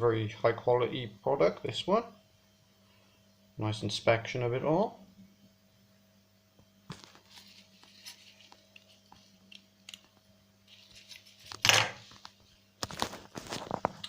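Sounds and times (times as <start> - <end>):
faint low hum: 0.0 - 14.0
hands handling necklace: 6.9 - 10.1, 10.7 - 14.0.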